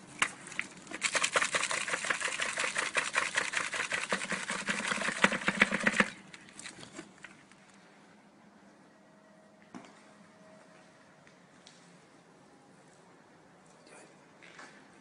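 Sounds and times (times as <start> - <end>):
debris rattling on plastic: 0.2 - 7.3.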